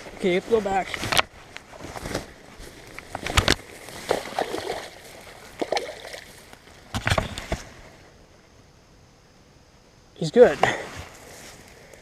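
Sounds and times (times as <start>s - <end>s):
water splashing: 3.7s - 6.5s.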